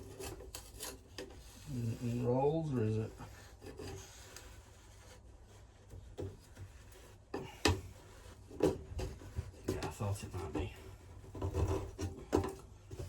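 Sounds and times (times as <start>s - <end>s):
rubbing and scraping inside furnace: 0.0s - 13.0s.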